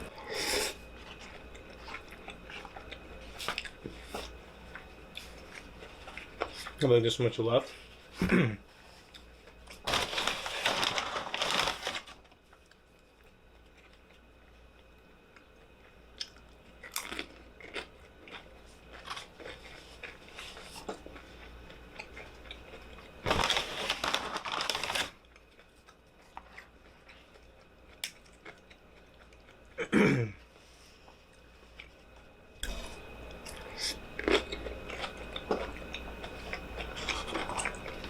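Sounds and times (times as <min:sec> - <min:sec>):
person chewing food: 0:00.0 - 0:06.8, 0:13.4 - 0:23.2, 0:25.2 - 0:29.8, 0:30.5 - 0:38.0.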